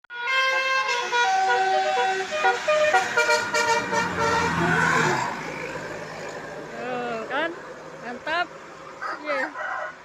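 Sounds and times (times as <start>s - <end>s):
musical bus air horn melody: 0.1s - 5.1s.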